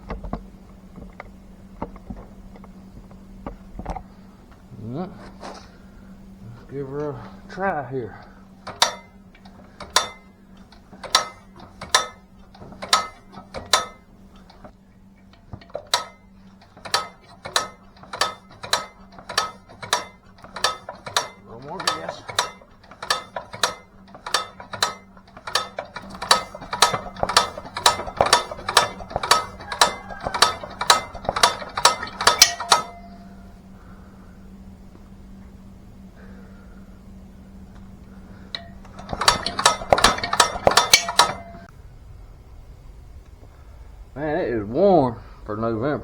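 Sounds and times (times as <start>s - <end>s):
engine cranked by hand: 0.0s - 41.8s
sharp cranking clicks: 6.4s - 33.6s, 37.8s - 41.7s.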